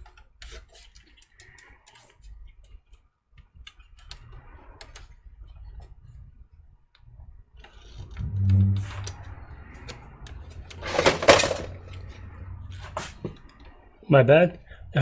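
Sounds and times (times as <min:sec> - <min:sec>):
brief low hum: 0:08.2 - 0:09.3
computer parts clicking and knocking: 0:10.7 - 0:11.8
scraping rustle: 0:10.8 - 0:11.8.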